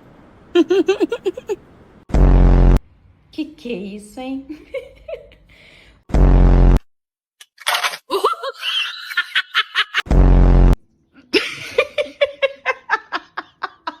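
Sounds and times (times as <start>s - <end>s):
person laughing: 0.6s - 1.6s, 8.1s - 10.1s, 11.2s - 14.0s
low buzzing noise: 1.8s - 3.3s.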